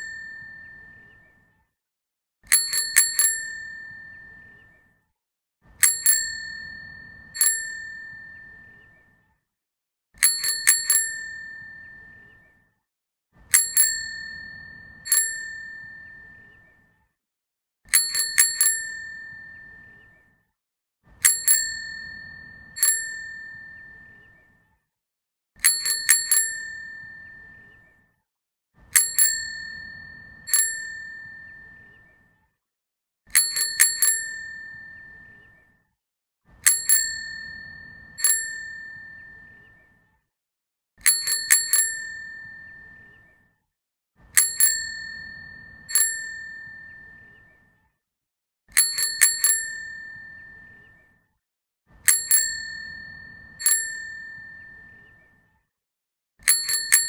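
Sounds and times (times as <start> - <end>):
bicycle bell ringing: 0.0 - 1.0, 2.5 - 4.4, 5.8 - 8.7, 10.2 - 12.2, 13.5 - 16.4, 17.9 - 19.8, 21.2 - 24.1, 25.6 - 27.6, 28.9 - 31.8, 33.3 - 35.2, 36.6 - 39.6, 41.0 - 43.0, 44.4 - 47.2, 48.7 - 50.7, 52.0 - 55.0, 56.4 - 57.0.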